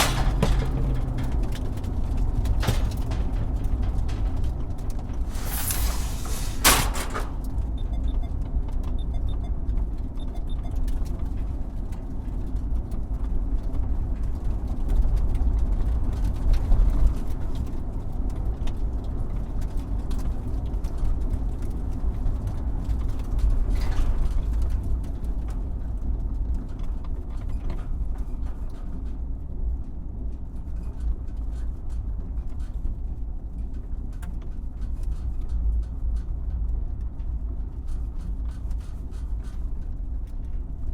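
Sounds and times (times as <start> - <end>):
car engine and tyres rumbling: 0.0 - 6.4
suspension knocks: 0.0 - 7.7.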